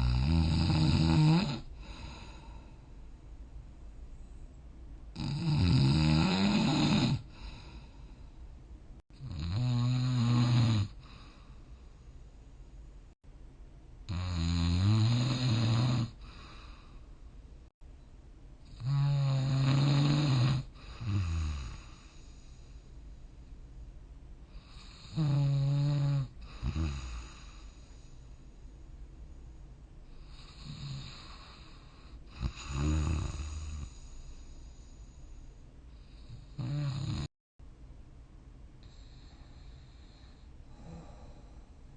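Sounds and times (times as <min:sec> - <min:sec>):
person snoring: 0:00.0 - 0:02.8, 0:05.2 - 0:08.0, 0:09.2 - 0:11.7, 0:14.1 - 0:17.0, 0:18.7 - 0:22.6, 0:24.6 - 0:28.0, 0:30.2 - 0:35.0, 0:36.1 - 0:37.3, 0:38.8 - 0:41.6.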